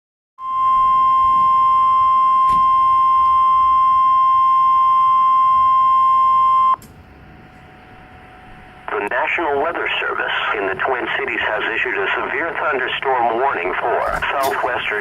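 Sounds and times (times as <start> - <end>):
steady high beep: 0.4 - 6.8
faint radio hiss: 8.9 - 15.0.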